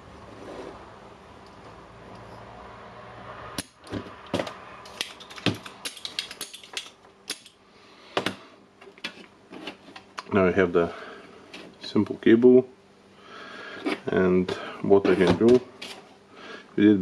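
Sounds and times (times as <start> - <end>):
small tools clicking and knocking: 3.6 - 7.6.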